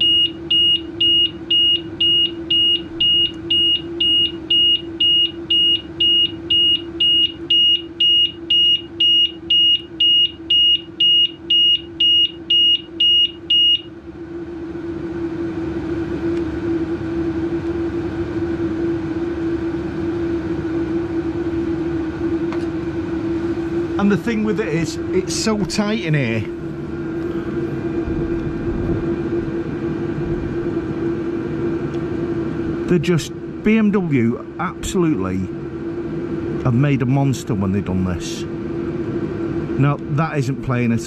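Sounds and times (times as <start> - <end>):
scooter alarm beeping: 0.0 - 13.9
steady low hum: 0.0 - 41.0.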